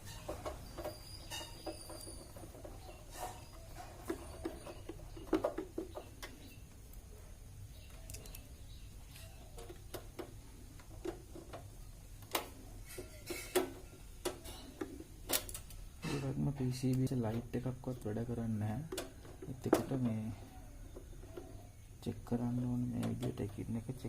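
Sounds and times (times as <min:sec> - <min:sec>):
light clicks and knocks: 0:16.8 - 0:24.0.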